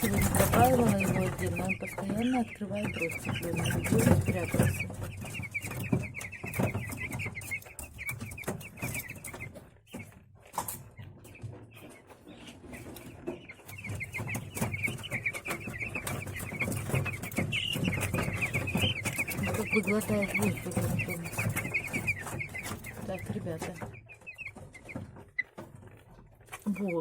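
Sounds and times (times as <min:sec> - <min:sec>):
chicks peeping: 0:00.0 - 0:27.0.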